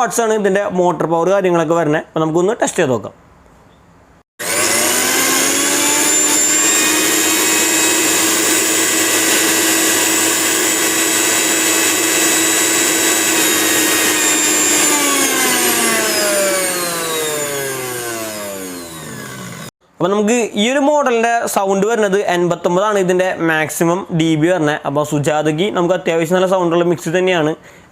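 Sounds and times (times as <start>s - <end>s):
mixer grinder motor whining: 4.4s - 19.7s.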